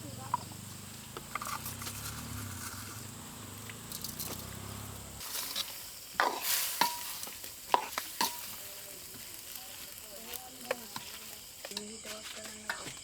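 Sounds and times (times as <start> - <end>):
food sizzling in a pot: 0.0 - 13.0
spoon scraping and clinking pot: 5.2 - 9.3.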